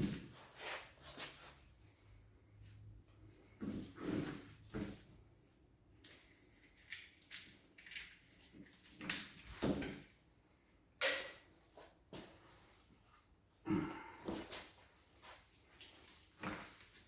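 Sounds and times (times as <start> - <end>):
metal tools knocking and scraping: 11.0 - 11.6
sharp metallic clink: 11.0 - 11.6.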